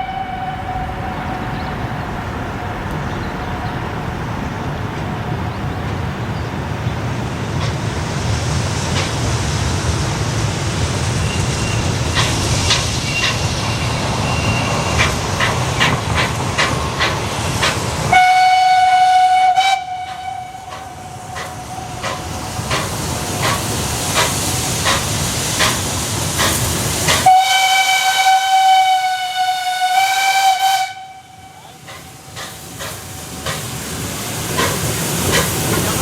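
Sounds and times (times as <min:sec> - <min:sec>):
steam whistle blast: 0:00.0 - 0:01.2, 0:18.1 - 0:21.9, 0:27.2 - 0:31.7
steam train rumbling by: 0:00.0 - 0:36.0
wheels clicking over rail joints: 0:00.7 - 0:06.6, 0:20.0 - 0:27.4, 0:31.7 - 0:36.0.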